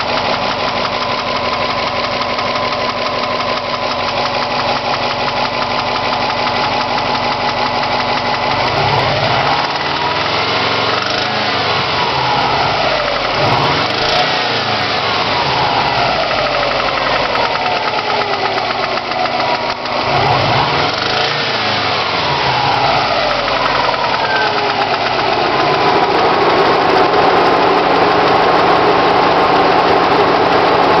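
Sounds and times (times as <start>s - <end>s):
knocking engine running: 0.0s - 31.0s.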